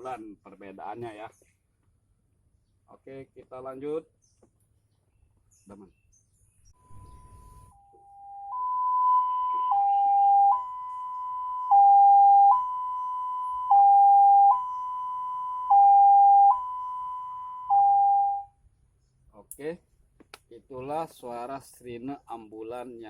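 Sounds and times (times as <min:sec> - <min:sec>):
two-tone ambulance siren: 0:06.8 - 0:18.5.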